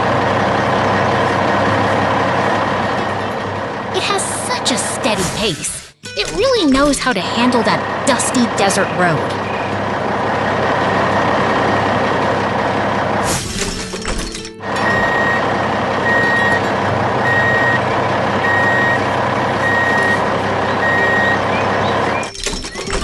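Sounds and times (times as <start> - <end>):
heavy truck engine running: 0.0 - 23.0
reversing alarm beeping: 14.8 - 22.9.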